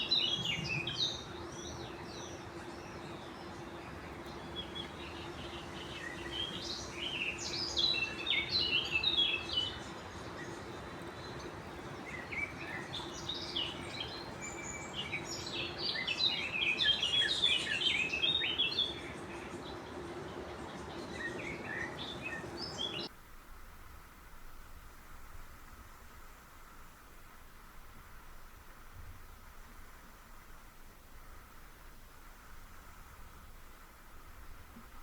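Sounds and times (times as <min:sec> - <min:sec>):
songbird chirping: 0:00.0 - 0:23.2.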